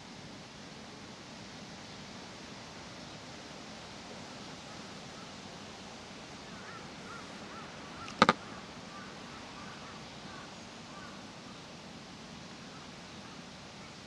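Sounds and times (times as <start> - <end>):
background hiss: 0.0 - 14.0
short bird calls: 6.6 - 10.4
sharp double click: 8.1 - 8.4.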